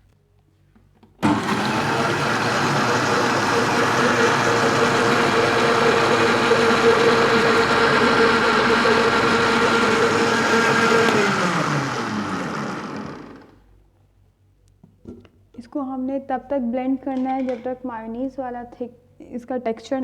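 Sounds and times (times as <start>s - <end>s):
blender motor running: 1.2s - 13.6s.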